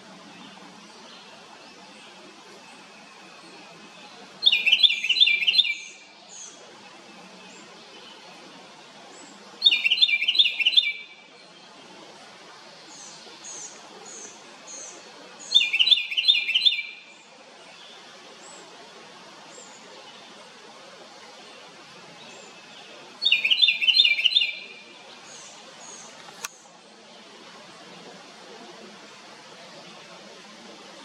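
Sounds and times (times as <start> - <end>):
wren chattering song: 23.2 - 26.6
sharp click: 26.2 - 26.6.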